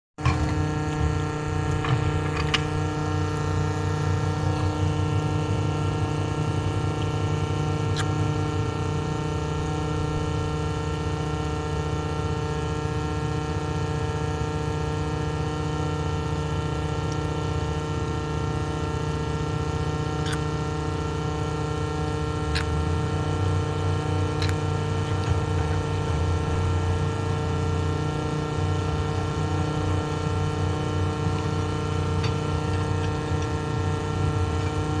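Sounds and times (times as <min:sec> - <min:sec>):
excavator engine running: 0:00.2 - 0:07.9, 0:21.4 - 0:35.0.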